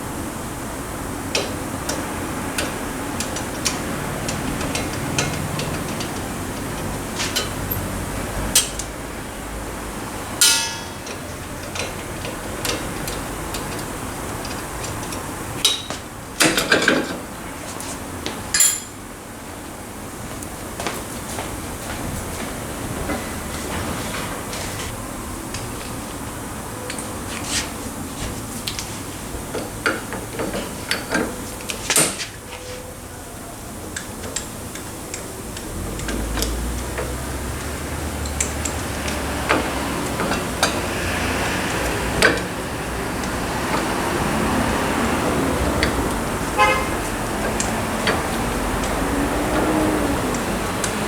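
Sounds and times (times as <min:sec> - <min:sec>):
low workshop hum: 0:00.0 - 0:51.0
metal parts clinking and knocking: 0:10.4 - 0:13.8, 0:18.6 - 0:19.0.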